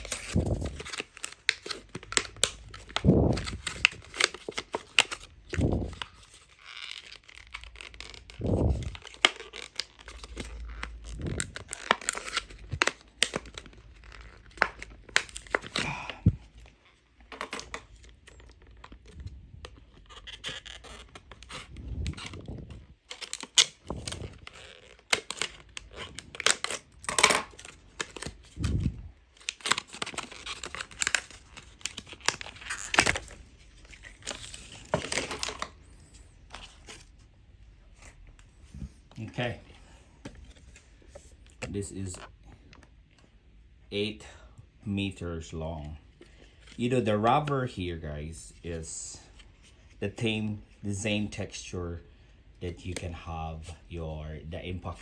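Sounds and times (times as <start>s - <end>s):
packaging torn and crinkled: 0.0s - 16.8s, 17.6s - 37.2s.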